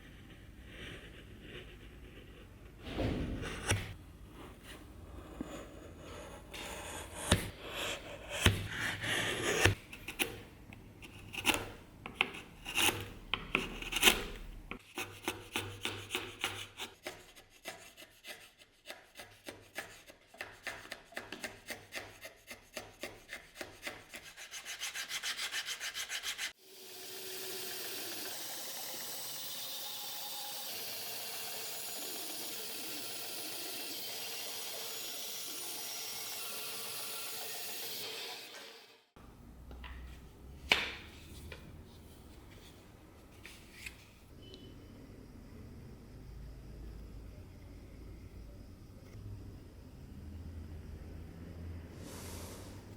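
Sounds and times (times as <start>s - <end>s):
hand abrasive rubbing strokes: 52.0s - 52.9s.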